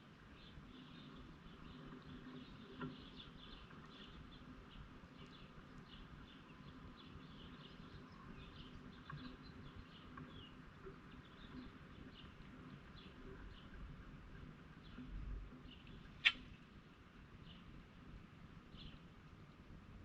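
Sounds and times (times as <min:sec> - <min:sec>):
birds chirping: 0:15.7 - 0:16.6
faint click: 0:15.8 - 0:16.6.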